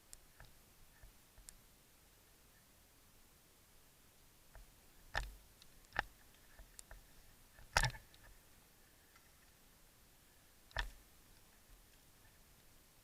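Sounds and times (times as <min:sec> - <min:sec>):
faint ticks: 0:00.0 - 0:01.6, 0:04.1 - 0:08.4, 0:10.6 - 0:12.8.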